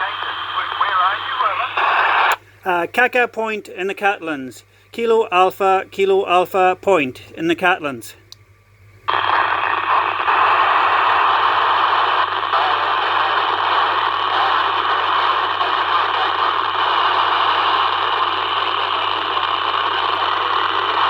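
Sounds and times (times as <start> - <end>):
radio static hiss: 0.0 - 2.8, 9.1 - 21.0.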